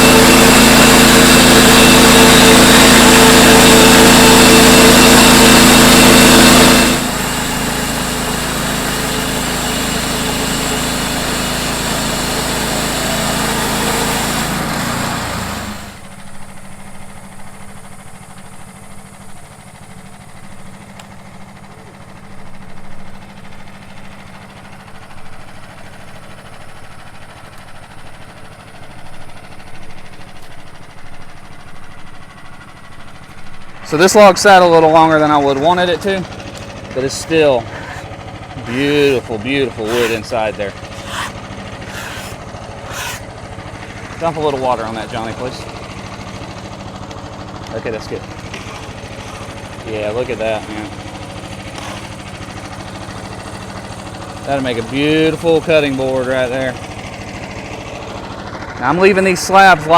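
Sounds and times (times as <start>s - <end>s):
gas engine running: 0.0s - 59.9s.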